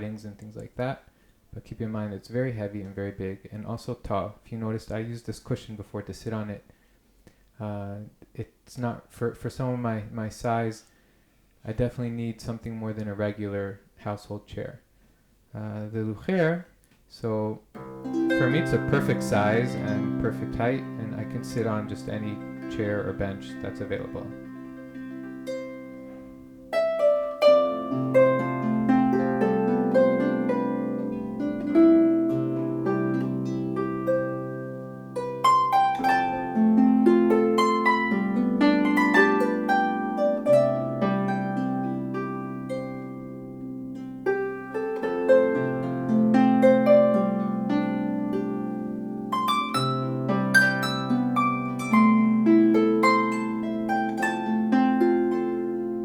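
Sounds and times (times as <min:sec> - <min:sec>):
harp playing: 0:17.8 - 0:56.0.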